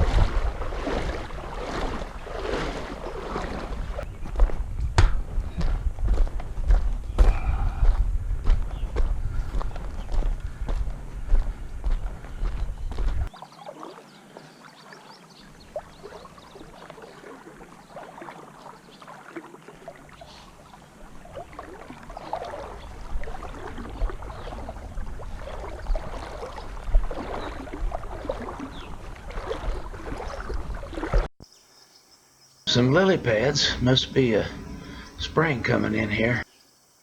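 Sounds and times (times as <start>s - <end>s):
water splashing from wading: 0.0s - 5.7s, 11.3s - 31.3s.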